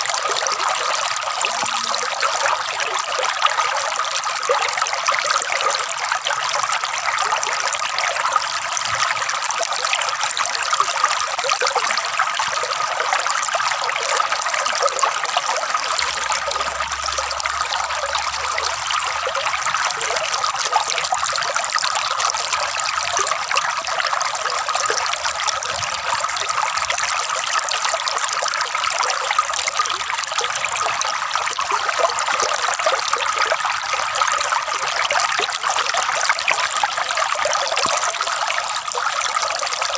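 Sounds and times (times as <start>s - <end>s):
water trickling and gurgling: 0.0s - 39.9s.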